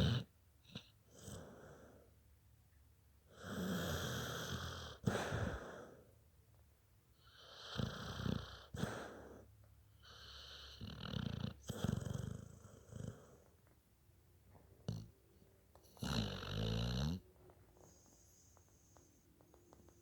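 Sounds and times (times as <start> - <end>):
snoring: 0.0 - 2.0, 3.3 - 5.9, 7.2 - 9.4, 10.0 - 13.5, 14.9 - 15.1, 15.8 - 17.2.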